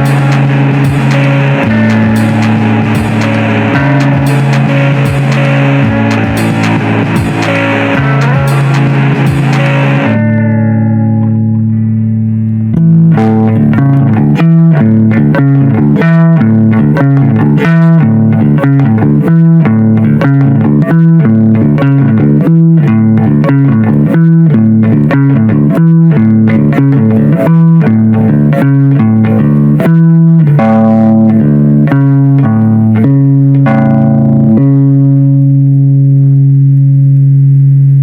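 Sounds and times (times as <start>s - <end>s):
plucked bass notes: 0.0s - 38.0s.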